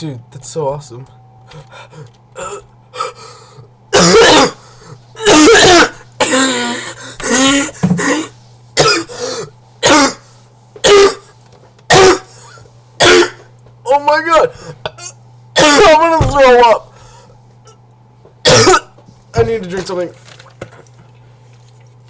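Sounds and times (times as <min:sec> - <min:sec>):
person coughing harshly: 0:02.0 - 0:03.2, 0:03.9 - 0:11.3, 0:11.9 - 0:13.5, 0:14.6 - 0:16.1, 0:18.4 - 0:19.0.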